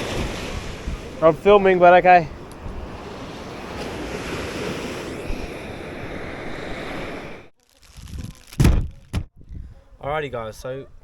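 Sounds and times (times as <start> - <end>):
wind on microphone: 0.0 - 1.7, 2.3 - 10.2
ocean surf washing in: 0.0 - 7.5
loud thump: 8.6 - 9.3.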